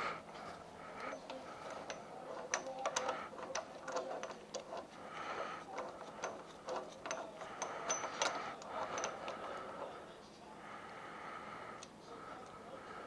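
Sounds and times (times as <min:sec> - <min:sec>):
metal grating scrape: 0:00.3 - 0:10.0
metal tools clicking with ring: 0:01.0 - 0:04.9, 0:05.7 - 0:09.6.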